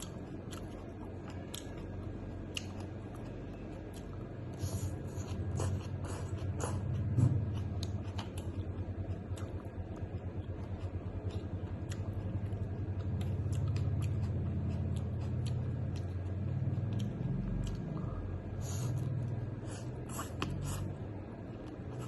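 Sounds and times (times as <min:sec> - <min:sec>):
chewing rumble: 0:00.0 - 0:22.0.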